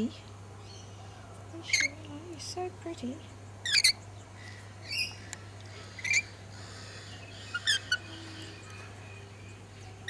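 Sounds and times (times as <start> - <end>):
bird chirps: 3.6 - 10.0.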